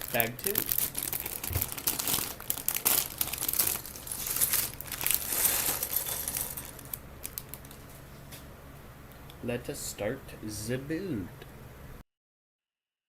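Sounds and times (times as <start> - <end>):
plastic pieces clattering: 0.0 - 7.8
plastic bag crinkling: 0.0 - 7.9.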